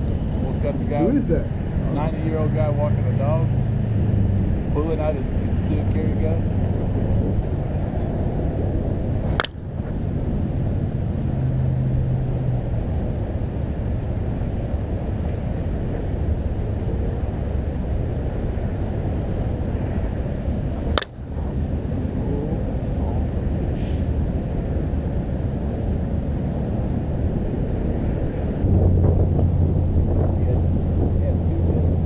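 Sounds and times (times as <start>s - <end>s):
low outdoor rumble: 0.0s - 32.0s
bat hitting a ball: 9.3s - 9.6s, 20.9s - 21.2s.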